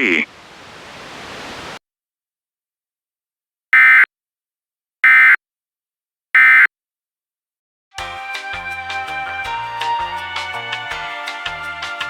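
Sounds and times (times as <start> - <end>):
music: 8.0 - 12.0.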